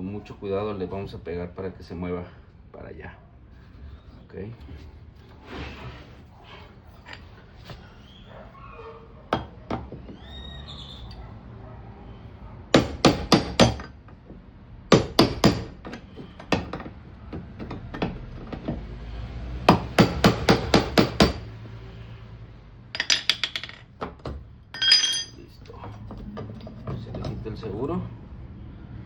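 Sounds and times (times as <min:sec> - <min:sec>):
hammer tapping metal ring: 0:24.8 - 0:25.4.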